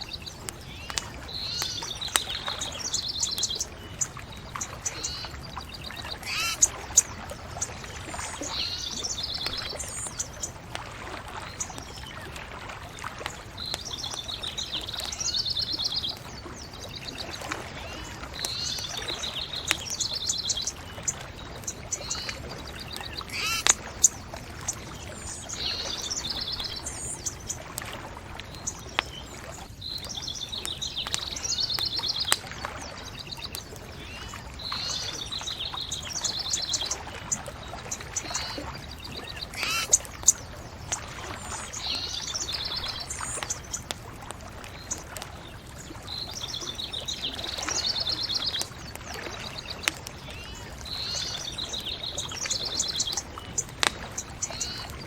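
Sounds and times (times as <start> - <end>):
songbird singing trilled phrase: 0.0 - 10.5, 16.9 - 24.2, 37.9 - 43.8.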